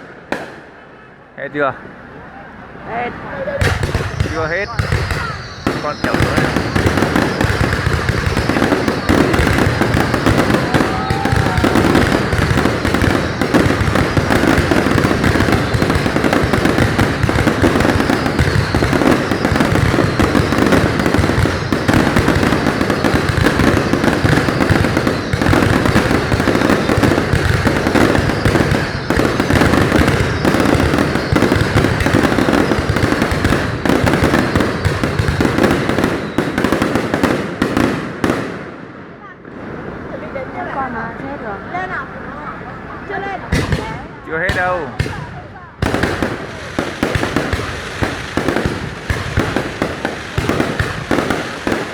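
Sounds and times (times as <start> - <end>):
firework bursts and crackling: 0.0 - 2.2, 2.9 - 51.9.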